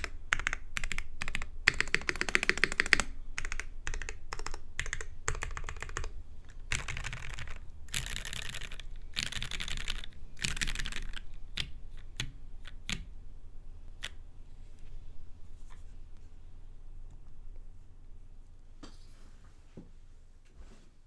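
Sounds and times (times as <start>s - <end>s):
typing on mechanical keyboard: 0.0s - 13.1s.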